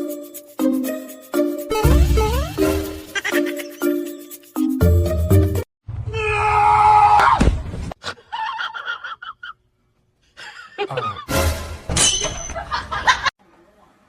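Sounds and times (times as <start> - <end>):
loud drawn-out scream: 6.0 - 7.5.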